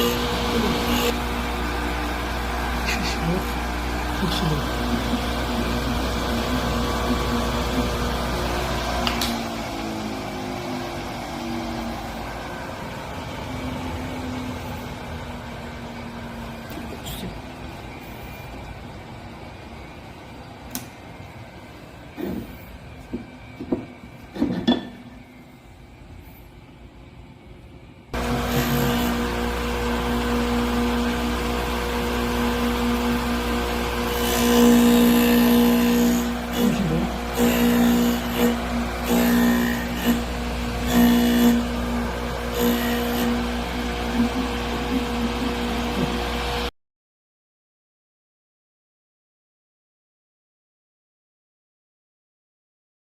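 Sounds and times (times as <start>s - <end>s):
grinding wheel on drill bit: 0.0s - 8.8s, 28.2s - 46.5s
grinder motor humming: 0.0s - 17.0s, 28.2s - 46.7s.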